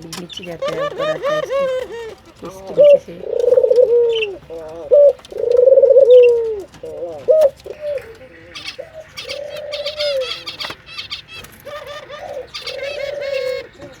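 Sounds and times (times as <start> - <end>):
doves cooing: 0.0 - 14.0
small birds chirping: 0.0 - 14.0.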